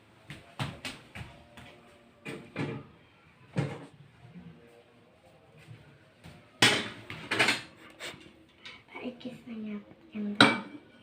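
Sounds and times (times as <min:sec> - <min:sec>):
knocks and bangs of objects: 0:06.6 - 0:07.7.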